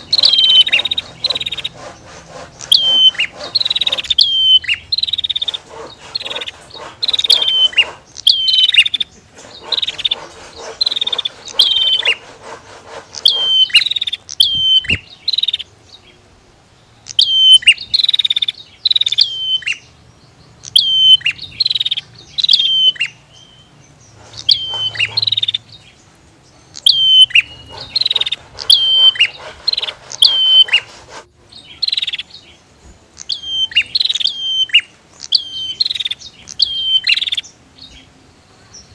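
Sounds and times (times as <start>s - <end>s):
bird buzzy rattling chatter: 0.0s - 15.9s, 20.5s - 32.3s.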